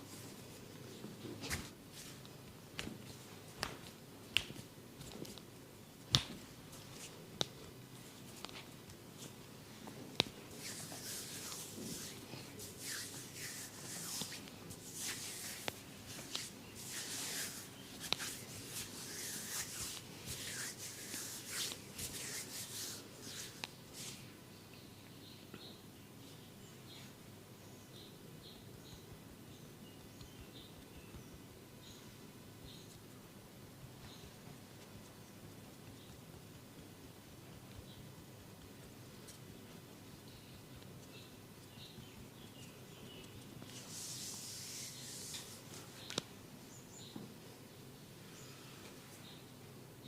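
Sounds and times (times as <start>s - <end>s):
hands rubbing hair and skin: 6.0s - 24.3s, 43.6s - 46.3s.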